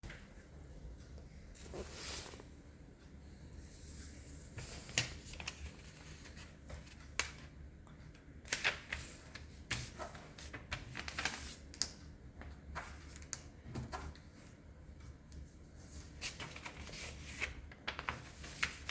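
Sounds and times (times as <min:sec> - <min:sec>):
paper rustling and crackling: 0:04.5 - 0:07.5, 0:08.5 - 0:14.4, 0:15.7 - 0:18.9.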